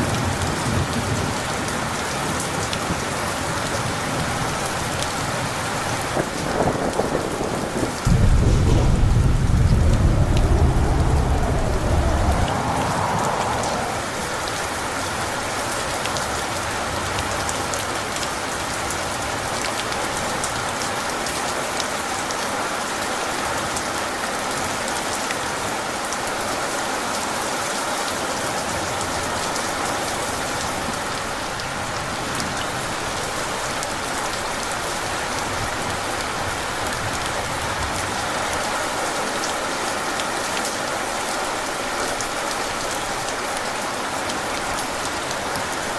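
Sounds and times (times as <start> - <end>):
heavy rain: 0.0 - 45.9
thunder rumble: 6.2 - 15.3.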